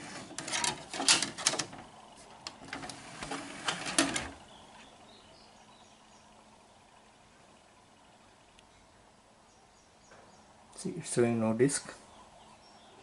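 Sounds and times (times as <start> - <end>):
disc tray clicking and clattering: 0.0 - 4.4.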